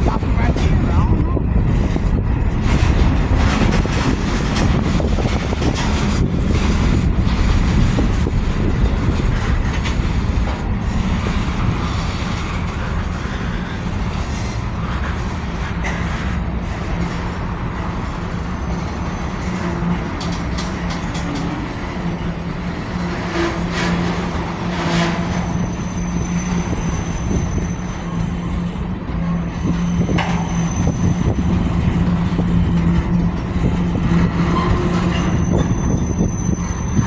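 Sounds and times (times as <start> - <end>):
freight train rolling: 0.0 - 37.0
rail cars clicking: 0.0 - 37.0
high squeal: 24.8 - 28.6, 29.3 - 31.8, 34.3 - 37.0.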